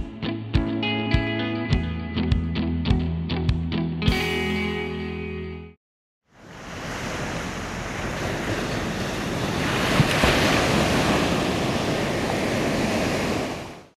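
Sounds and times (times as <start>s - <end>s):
sea surf washing on shore: 6.3s - 13.9s.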